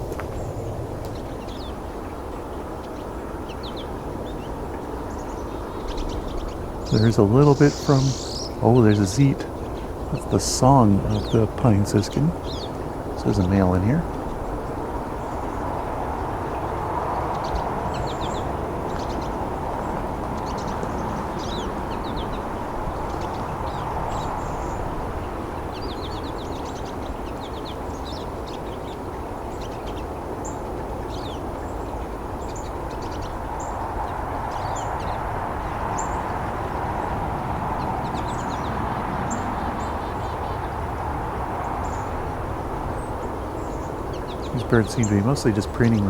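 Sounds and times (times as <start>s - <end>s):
finch calls and twitters: 0.1s - 36.5s, 42.9s - 46.0s.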